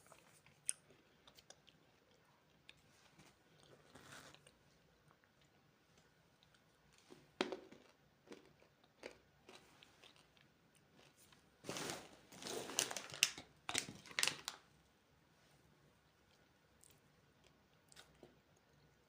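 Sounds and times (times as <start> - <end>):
candy being crunched: 12.4 - 14.6.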